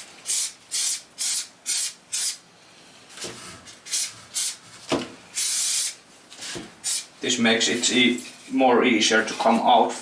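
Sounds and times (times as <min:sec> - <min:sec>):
spray can hissing bursts: 0:00.2 - 0:02.4, 0:03.8 - 0:04.6, 0:05.4 - 0:06.0, 0:06.8 - 0:07.1.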